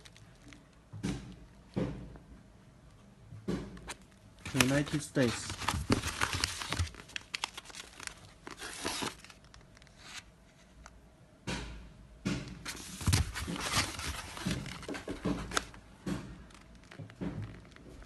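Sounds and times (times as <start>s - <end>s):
packing material crinkling and tearing: 0.0s - 0.8s, 3.9s - 10.3s, 12.7s - 15.8s, 16.5s - 18.0s.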